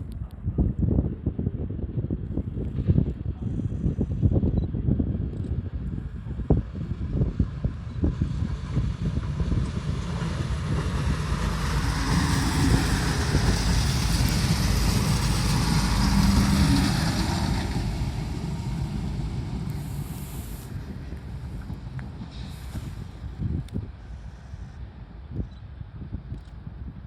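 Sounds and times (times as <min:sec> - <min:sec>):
electric train passing by: 0:06.7 - 0:25.2.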